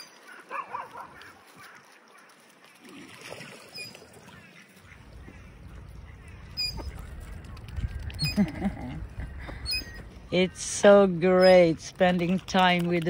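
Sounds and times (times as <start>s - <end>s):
ducks quacking: 3.8s - 11.6s.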